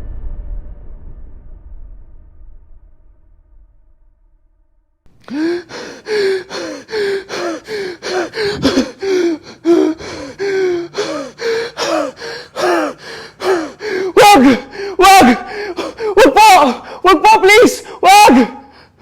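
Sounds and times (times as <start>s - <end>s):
person making short gasping sounds: 5.2s - 17.1s.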